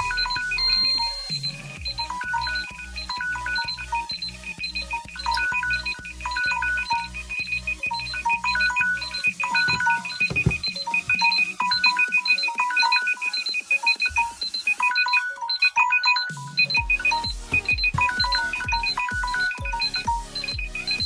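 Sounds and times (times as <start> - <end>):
plinking melody: 0.0 - 21.0
short high beeps: 1.9 - 7.1
low pulsing beat: 16.8 - 20.8.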